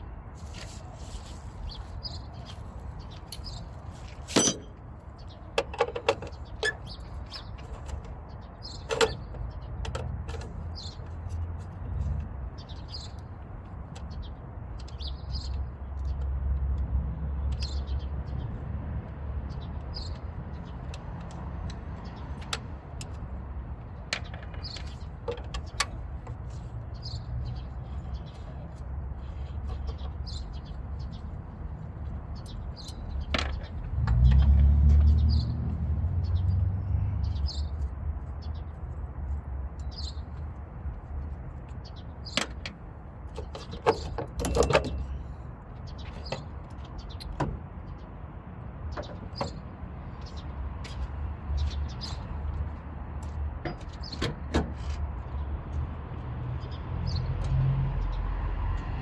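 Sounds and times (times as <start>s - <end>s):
low vehicle rumble: 0.5s - 59.0s
birds chirping: 0.8s - 16.5s, 17.2s - 58.3s.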